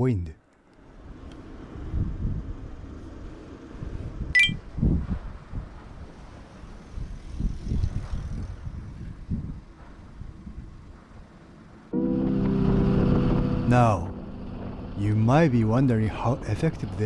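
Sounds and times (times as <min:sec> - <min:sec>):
low knocks and rumble: 0:12.4 - 0:17.0.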